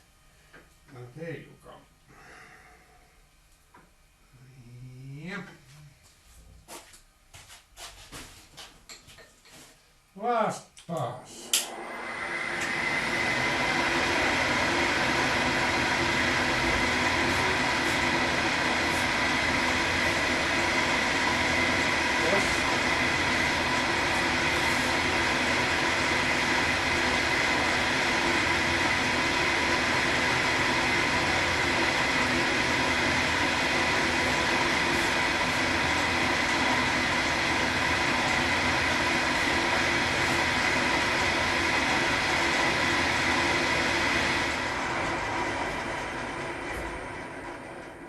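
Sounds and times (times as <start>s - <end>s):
milling machine grinding: 11.6s - 48.0s.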